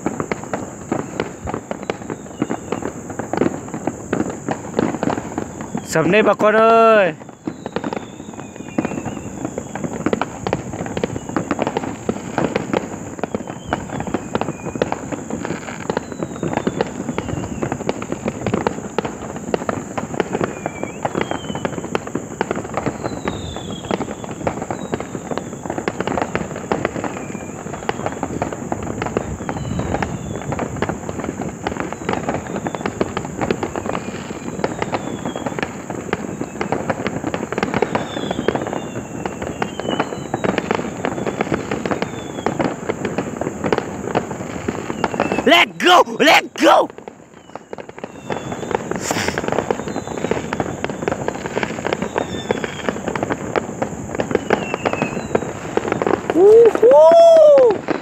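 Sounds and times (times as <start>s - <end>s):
fireworks popping and crackling: 0.0s - 58.0s
falling whistles: 1.8s - 3.0s, 7.1s - 9.8s, 11.0s - 11.6s, 13.2s - 15.1s, 15.8s - 17.8s, 20.4s - 22.0s, 22.8s - 25.8s, 27.0s - 28.2s, 29.3s - 30.5s, 34.0s - 35.6s, 37.7s - 42.6s, 44.8s - 46.4s, 47.3s - 51.2s, 51.9s - 53.0s, 54.2s - 58.0s.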